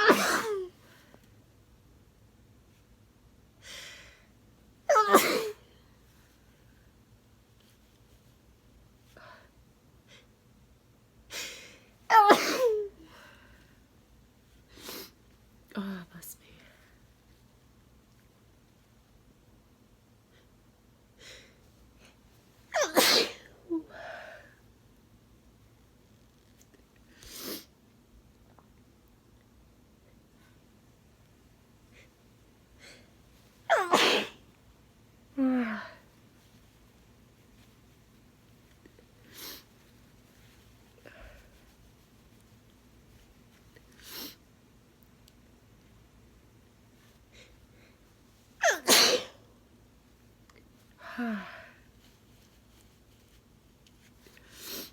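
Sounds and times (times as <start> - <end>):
person sneezing: 0.0 - 0.8, 4.9 - 5.7, 11.3 - 12.9, 22.7 - 23.6, 33.7 - 34.4, 48.6 - 49.4.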